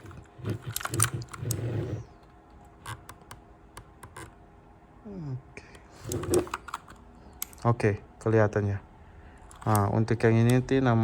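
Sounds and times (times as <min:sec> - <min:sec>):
mechanical keyboard clicks: 0:09.5 - 0:10.6.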